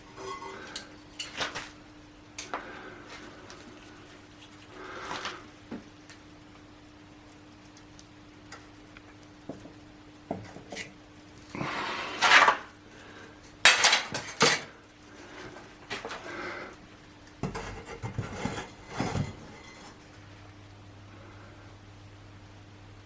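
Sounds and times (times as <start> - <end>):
metal objects clinking and clattering: 0.0 - 1.8, 12.2 - 12.7, 13.6 - 14.7, 17.4 - 20.0
faint steady hum: 0.0 - 23.0.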